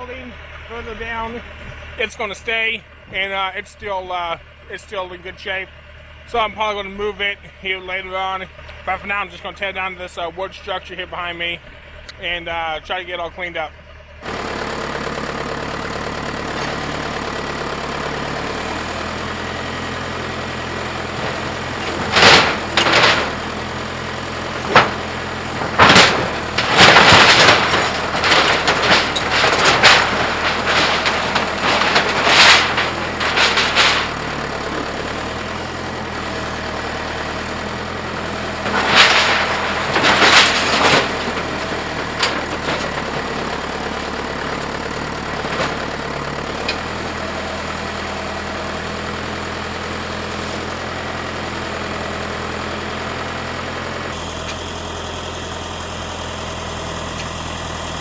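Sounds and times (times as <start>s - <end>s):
backhoe engine running: 0.0s - 58.0s
wood crashing and cracking: 14.2s - 55.1s.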